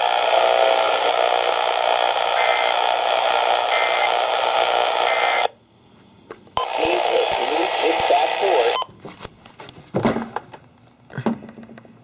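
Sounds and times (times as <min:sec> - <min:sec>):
radio static hiss: 0:00.0 - 0:05.6, 0:06.6 - 0:08.9.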